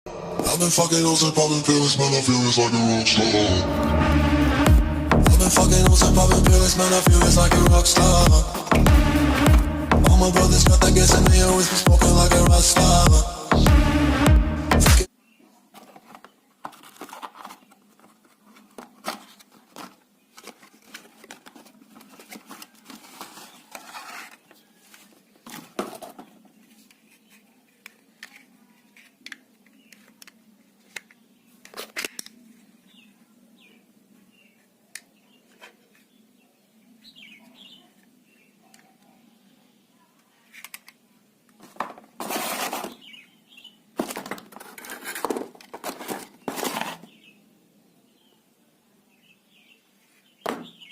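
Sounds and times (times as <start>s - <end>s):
packaging crinkling and rustling: 15.7s - 27.4s, 44.0s - 47.2s.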